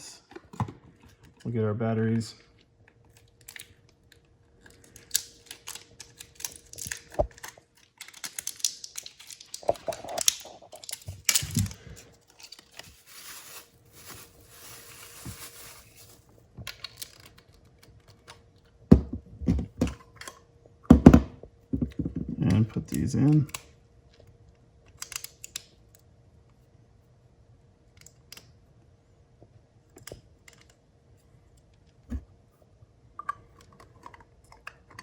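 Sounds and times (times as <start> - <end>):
plastic packaging rustling and tearing: 2.5 - 18.4.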